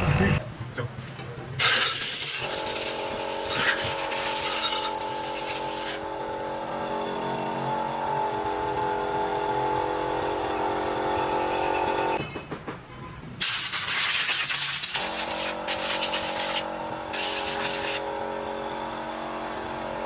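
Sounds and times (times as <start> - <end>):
workshop machine humming: 0.0 - 0.4, 1.5 - 12.2, 14.9 - 20.0
loud hiss: 17.2 - 18.0.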